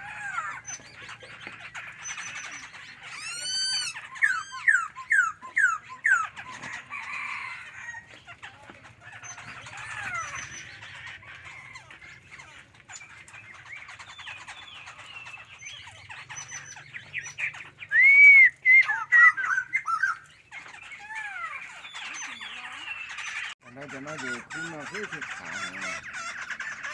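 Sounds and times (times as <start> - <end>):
songbird singing: 0.0 - 26.9.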